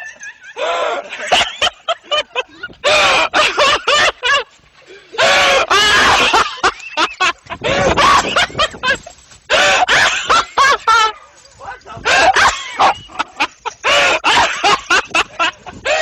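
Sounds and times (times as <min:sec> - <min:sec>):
person laughing: 0:00.0 - 0:11.2, 0:12.0 - 0:16.0
person screaming: 0:02.8 - 0:03.5, 0:05.2 - 0:06.4, 0:07.6 - 0:08.5.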